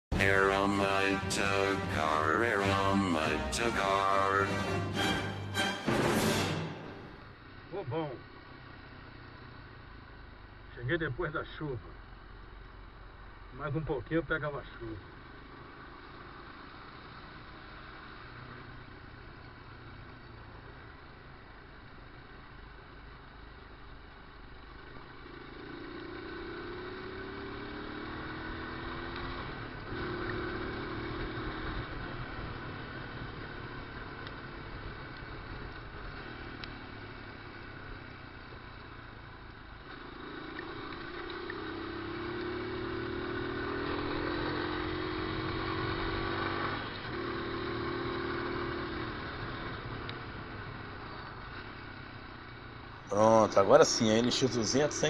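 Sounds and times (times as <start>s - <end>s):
motorcycle engine accelerating: 0.0s - 10.6s, 24.6s - 55.0s.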